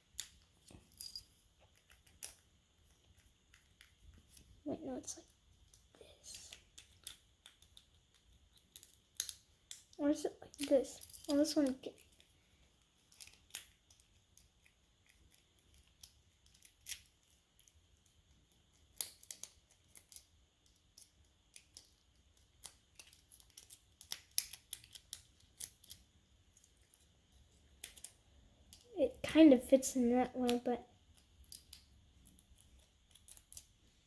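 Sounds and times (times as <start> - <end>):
lock-picking tools clicking: 6.4 - 12.1, 18.8 - 27.0, 27.6 - 28.8, 30.5 - 33.7.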